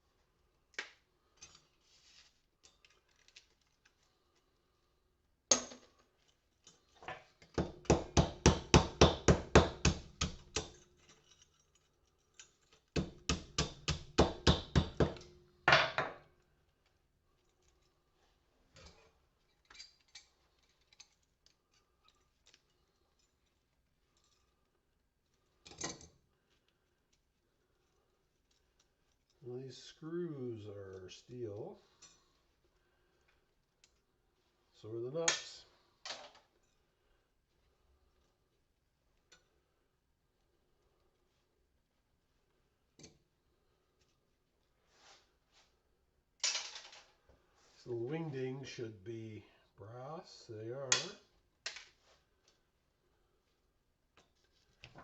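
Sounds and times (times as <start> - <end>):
small metal parts clinking: 2.6 - 4.5, 10.6 - 12.9, 18.8 - 27.2.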